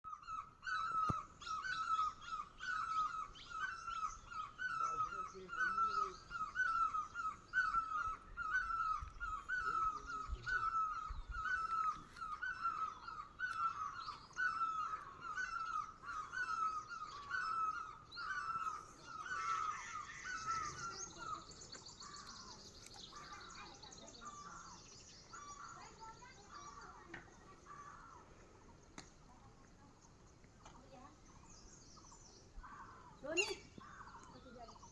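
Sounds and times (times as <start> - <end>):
birds chirping and chattering: 0.1 - 34.9
bird calling bending notes: 32.6 - 34.8.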